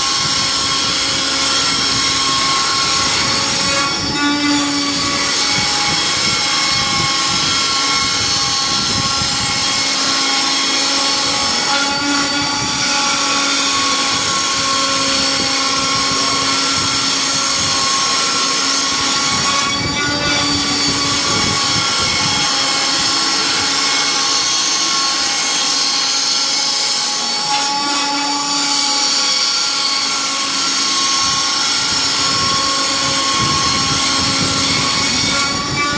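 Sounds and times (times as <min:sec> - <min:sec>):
cnc router motors whining: 0:00.0 - 0:35.9.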